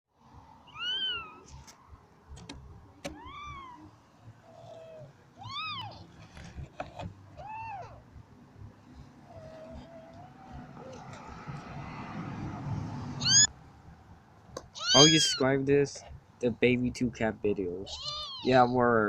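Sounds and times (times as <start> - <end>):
kittens mewing: 0.6 - 1.5, 3.0 - 6.2, 7.4 - 8.1, 9.2 - 11.6, 13.2 - 13.5, 14.6 - 15.5, 17.8 - 18.8.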